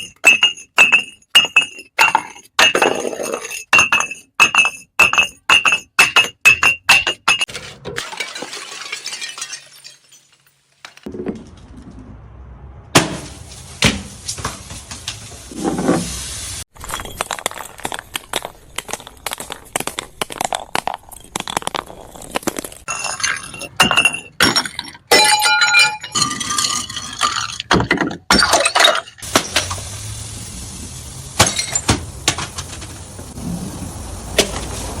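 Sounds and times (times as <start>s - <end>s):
glass bottles breaking: 0.0s - 11.1s, 21.1s - 29.8s, 31.4s - 32.9s
glass shards clinking: 0.0s - 11.1s, 22.8s - 29.8s, 31.4s - 32.8s.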